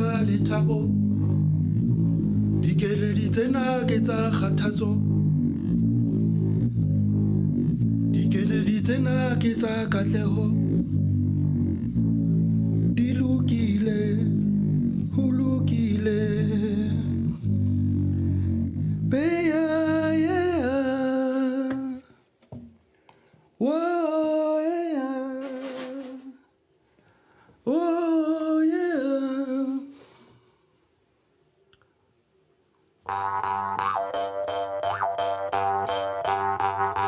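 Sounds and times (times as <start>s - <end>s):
person humming: 0.0s - 22.0s, 33.1s - 37.0s
music: 33.1s - 37.0s
song accompaniment: 33.1s - 37.0s.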